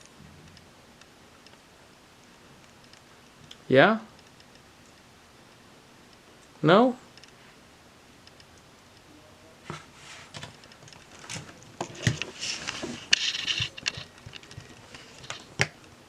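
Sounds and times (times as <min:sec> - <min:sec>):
scraping rustle: 0:09.6 - 0:15.6.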